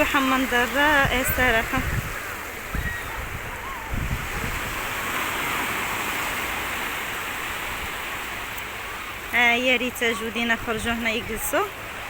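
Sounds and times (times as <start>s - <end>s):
wind rumbling on microphone: 0.0s - 8.3s
surf washing on shore: 0.0s - 12.0s.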